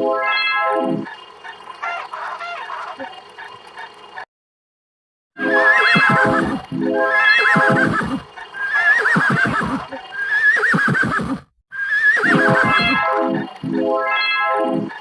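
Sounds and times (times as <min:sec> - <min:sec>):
wavering animal call: 0:05.4 - 0:06.7, 0:07.4 - 0:13.0.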